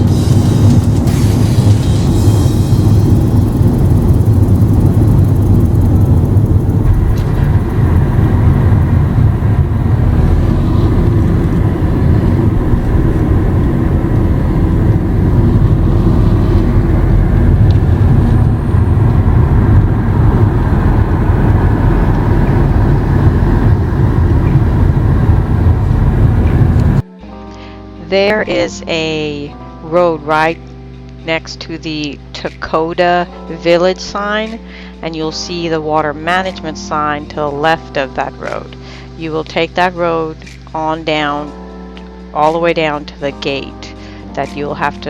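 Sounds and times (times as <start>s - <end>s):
engine and tyre rumble inside vehicle: 0.0s - 27.0s.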